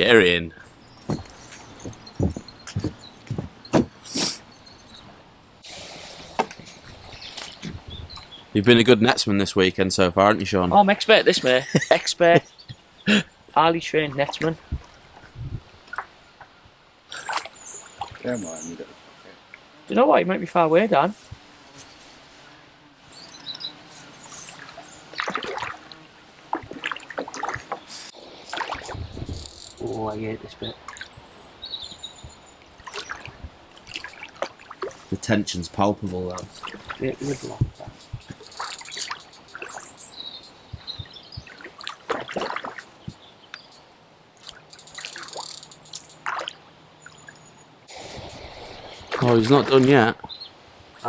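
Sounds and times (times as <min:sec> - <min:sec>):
fish splashing in shallow water: 0:28.4 - 0:30.1, 0:32.8 - 0:35.1, 0:36.6 - 0:40.8, 0:41.4 - 0:43.2
fish thrashing and splashing water: 0:32.8 - 0:35.0, 0:41.5 - 0:43.0.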